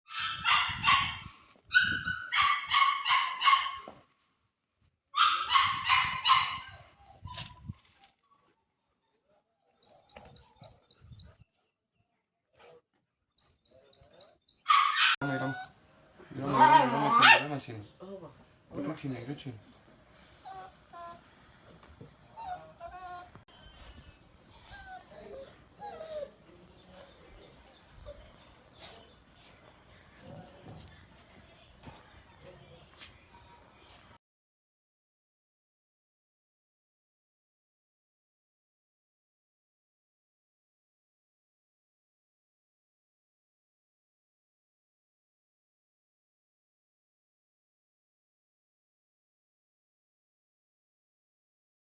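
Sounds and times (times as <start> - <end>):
puppy barking high-pitched yips: 0.1 - 3.9, 5.2 - 6.8, 14.7 - 15.2, 17.1 - 17.5
puppies whimpering and yipping: 0.2 - 3.2, 14.8 - 15.8, 22.2 - 29.0.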